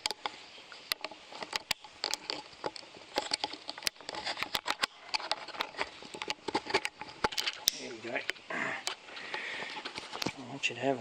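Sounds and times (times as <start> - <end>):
camera handling clicks and knocks: 0.9 - 9.0.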